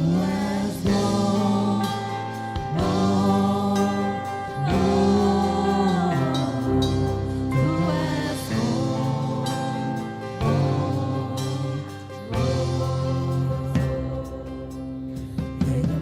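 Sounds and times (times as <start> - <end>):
band accompaniment: 0.0 - 16.0
voices singing worship song: 0.0 - 16.0.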